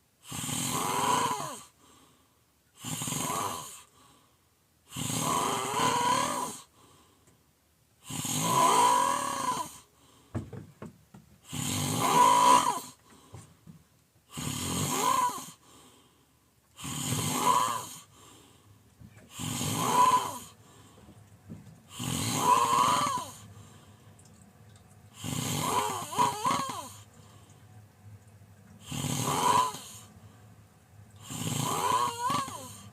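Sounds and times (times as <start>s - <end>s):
quiet breaths: 0.0s - 10.8s, 11.4s - 32.9s
person snoring loudly: 0.2s - 1.7s, 2.8s - 3.9s, 4.9s - 6.7s, 8.0s - 9.9s, 11.4s - 13.0s, 14.3s - 15.6s, 16.8s - 18.1s, 19.3s - 20.6s, 21.9s - 23.5s, 25.2s - 27.0s, 28.8s - 30.1s, 31.2s - 32.9s.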